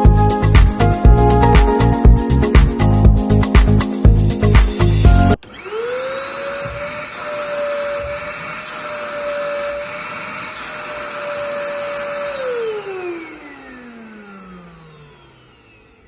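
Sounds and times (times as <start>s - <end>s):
vacuum cleaner motor whining: 5.3s - 16.0s.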